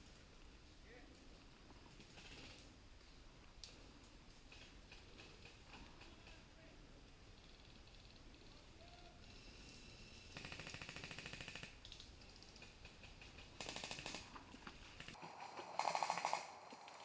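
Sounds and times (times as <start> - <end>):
airsoft guns firing bursts: 10.3 - 11.8, 13.6 - 14.3, 15.0 - 16.6.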